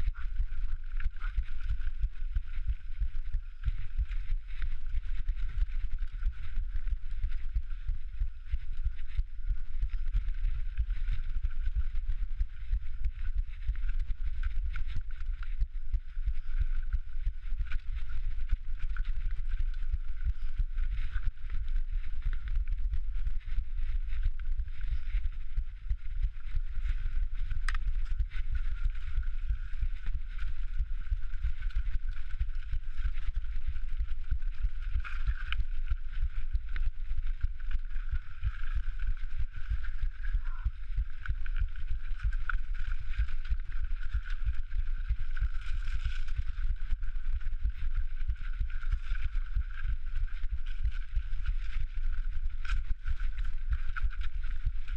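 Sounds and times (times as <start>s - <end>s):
mountain bike rumbling on rocks: 0.0s - 54.9s
bike clicks and rattles: 9.0s - 11.2s.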